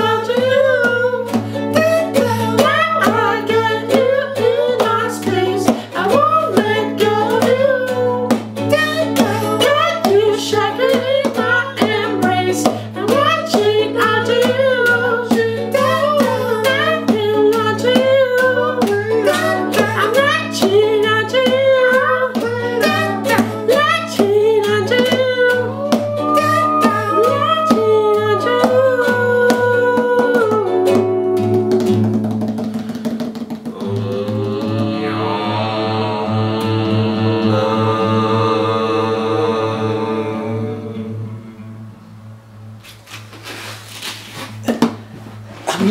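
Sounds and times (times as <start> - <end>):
person singing: 0.0 - 42.0, 45.6 - 45.9
strummed guitar and ukulele: 0.0 - 45.9
hand-drum hits on a chair: 25.9 - 35.0, 44.4 - 45.9
steady low drone: 33.8 - 42.6.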